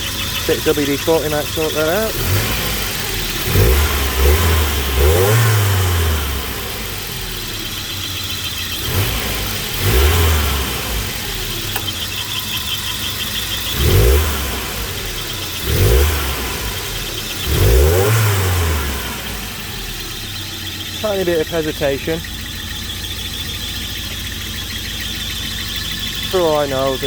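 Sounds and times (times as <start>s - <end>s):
car engine idling and revving: 0.0s - 27.0s.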